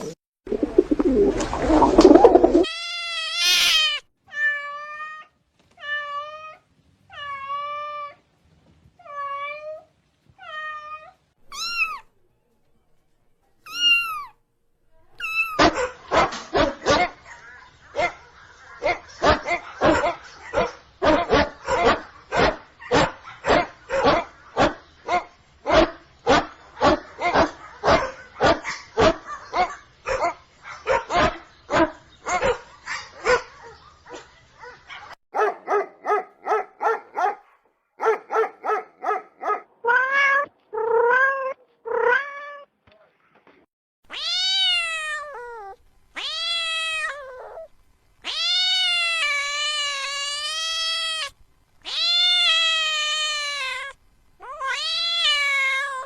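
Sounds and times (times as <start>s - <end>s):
cat meowing: 2.5s - 8.2s, 10.4s - 12.1s, 13.7s - 14.4s, 15.1s - 15.8s, 44.1s - 56.0s
dog barking rapidly: 15.5s - 39.7s.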